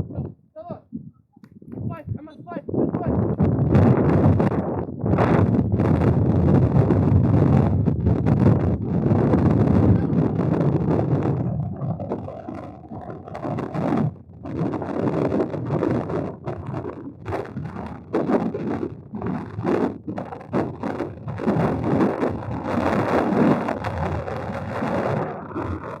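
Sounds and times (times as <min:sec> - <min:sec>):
wind buffeting microphone: 0:00.0 - 0:26.0.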